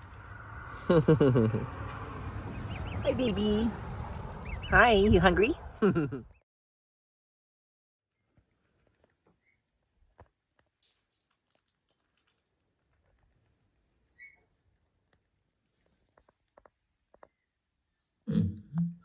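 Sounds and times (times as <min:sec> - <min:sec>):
gosling peeping softly: 0:02.5 - 0:05.4.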